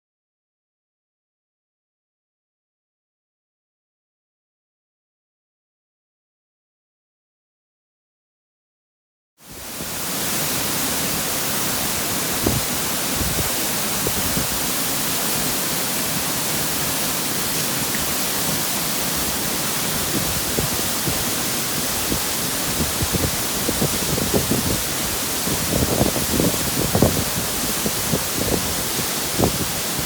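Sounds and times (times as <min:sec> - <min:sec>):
waterfall rushing hiss: 0:09.4 - 0:30.0.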